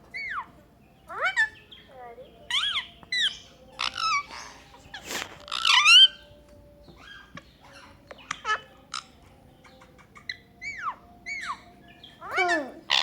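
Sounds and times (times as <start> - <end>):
parrot squawk: 12.2 - 13.0.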